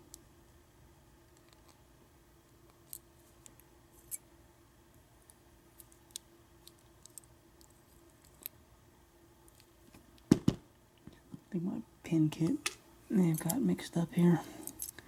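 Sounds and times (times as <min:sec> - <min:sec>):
faint steady hum: 0:00.0 - 0:15.0
tweezers and lock pins clicking: 0:12.6 - 0:13.6.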